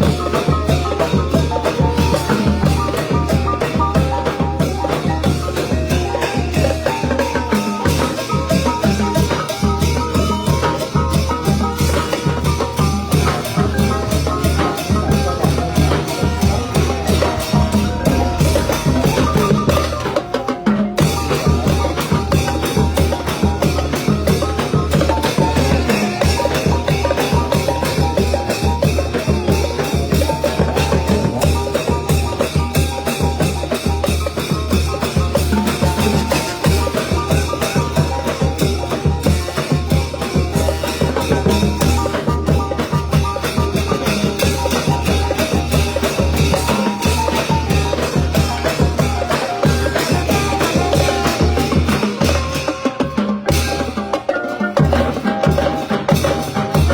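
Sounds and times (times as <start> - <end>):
drums beating: 0.0 - 56.9
brass band playing: 10.6 - 29.2, 35.0 - 56.9.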